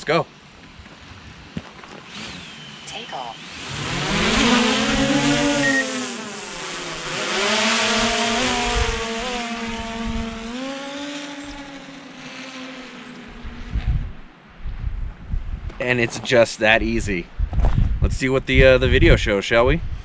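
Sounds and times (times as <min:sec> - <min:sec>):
drone propellers whining: 0:01.9 - 0:14.3.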